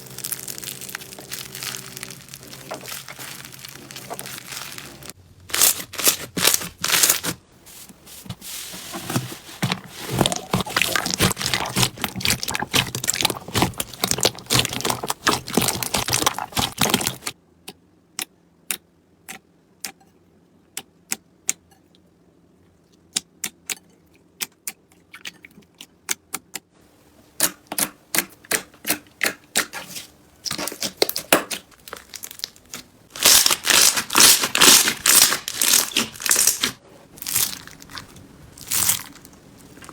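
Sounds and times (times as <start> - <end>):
slime crackling and popping: 0.0 - 7.3, 10.2 - 17.3, 30.5 - 39.9.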